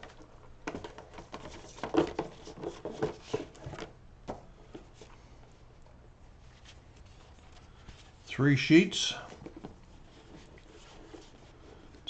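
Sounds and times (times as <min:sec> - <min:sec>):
cardboard pieces tapping and rustling: 0:00.0 - 0:04.8.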